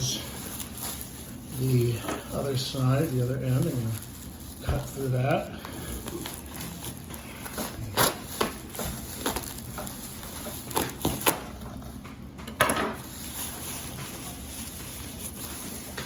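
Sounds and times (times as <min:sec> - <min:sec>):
tearing scrape: 0:00.0 - 0:11.6.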